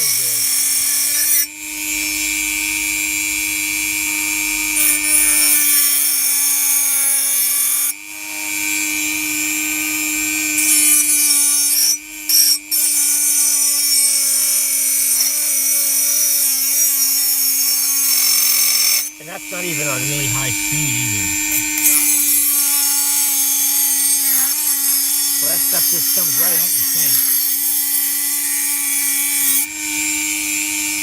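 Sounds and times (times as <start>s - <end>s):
rotary tool cutting whine: 0.0s - 31.0s.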